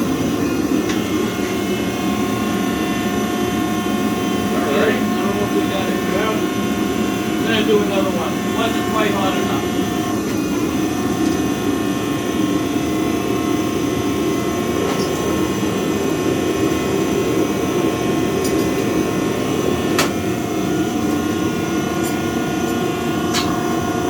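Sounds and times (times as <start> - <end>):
forge burner rushing: 0.0 - 24.0.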